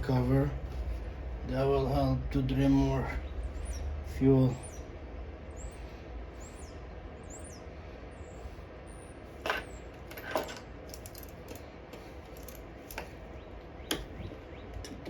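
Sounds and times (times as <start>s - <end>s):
steady low background noise: 0.0s - 15.0s
birds chirping: 1.5s - 10.1s, 12.0s - 15.0s.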